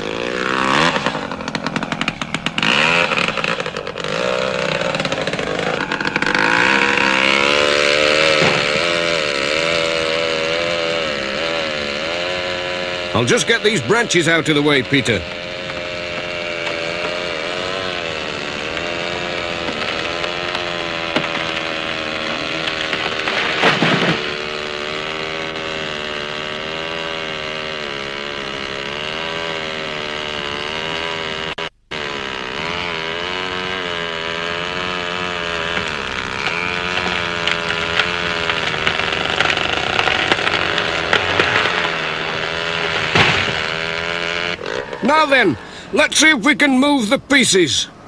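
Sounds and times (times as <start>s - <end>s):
chainsaw cutting wood: 0.0s - 47.0s.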